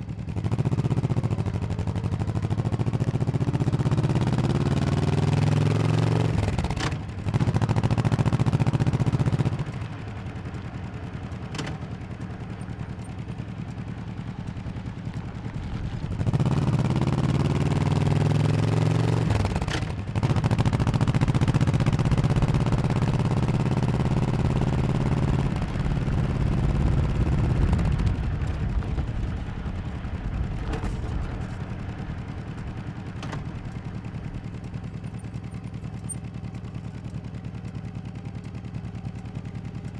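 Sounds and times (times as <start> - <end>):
motorcycle engine pulling hard: 0.1 - 39.9.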